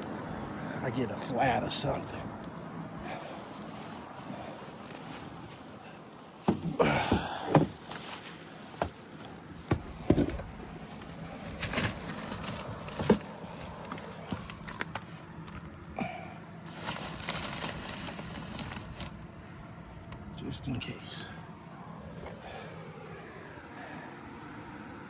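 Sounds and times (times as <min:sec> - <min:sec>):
tools rustling and clattering: 0:02.9 - 0:15.9, 0:16.6 - 0:19.2.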